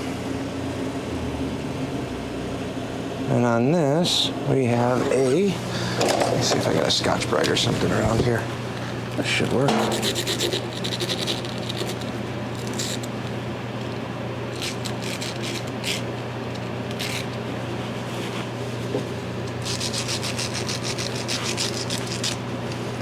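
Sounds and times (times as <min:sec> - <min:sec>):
scouring pad scrubbing metal: 0:09.6 - 0:10.7
low hum: 0:09.7 - 0:10.6.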